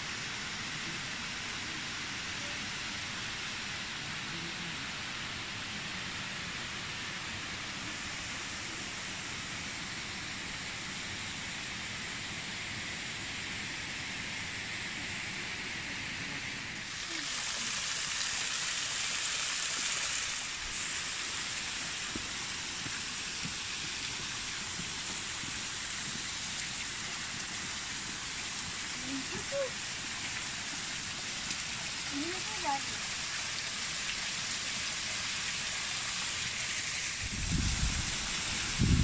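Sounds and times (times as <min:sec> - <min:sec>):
running water rushing: 0:16.7 - 0:39.0.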